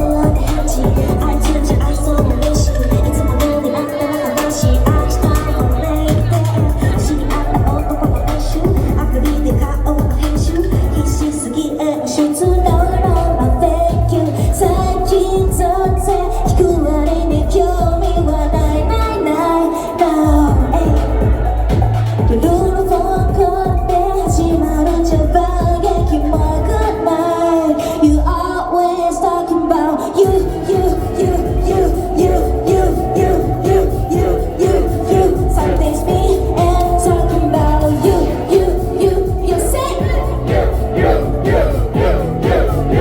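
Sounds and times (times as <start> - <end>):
pop song over loudspeakers: 0.0 - 43.0.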